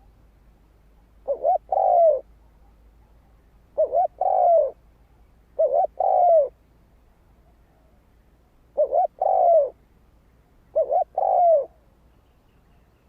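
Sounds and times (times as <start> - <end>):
dove cooing: 1.2 - 2.8, 3.8 - 4.8, 5.6 - 6.6, 8.8 - 9.8, 10.7 - 11.8.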